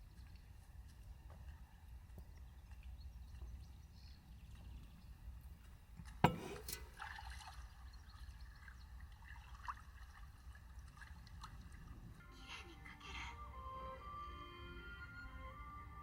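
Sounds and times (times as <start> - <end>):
liquid trickling: 6.0 - 12.2.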